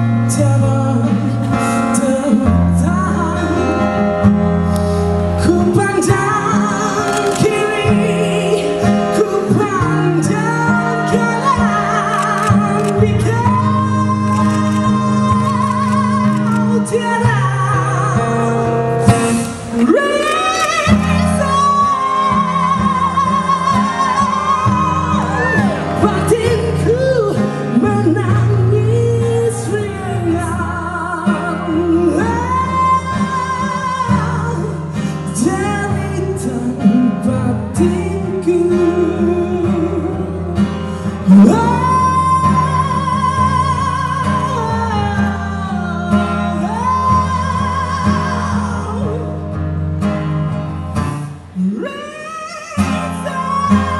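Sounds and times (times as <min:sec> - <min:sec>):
live band playing: 0:00.0 - 0:33.6.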